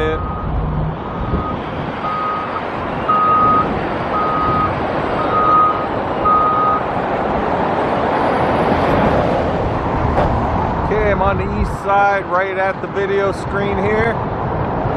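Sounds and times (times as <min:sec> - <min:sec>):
reversing alarm beeping: 0:00.0 - 0:06.8
outdoor noise: 0:00.0 - 0:14.9.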